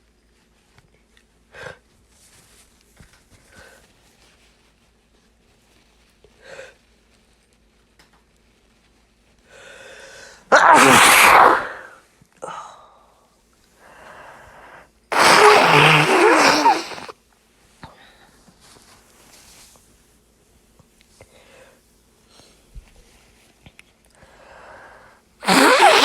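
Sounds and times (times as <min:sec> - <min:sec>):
person inhaling before sneeze: 0:10.5 - 0:11.9, 0:14.1 - 0:17.1, 0:25.4 - 0:26.0
person sneezing loudly: 0:10.5 - 0:11.9, 0:15.1 - 0:17.1, 0:25.4 - 0:26.0.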